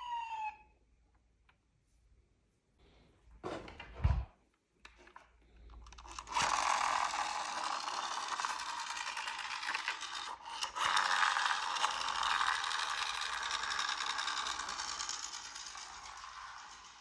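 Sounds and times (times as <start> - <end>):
toy car mechanism whirring: 5.8 - 17.0.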